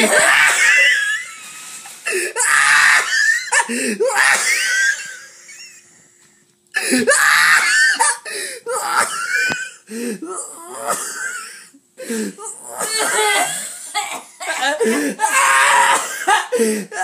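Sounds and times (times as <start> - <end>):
woman laughing with wheezing squeals: 0.0 - 5.9, 7.0 - 9.8, 14.7 - 17.0.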